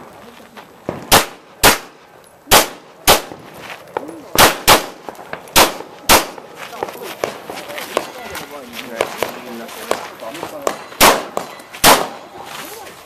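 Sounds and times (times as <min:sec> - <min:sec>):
handgun shots: 0:01.1 - 0:01.9, 0:02.5 - 0:03.3, 0:04.4 - 0:05.0, 0:11.0 - 0:12.2.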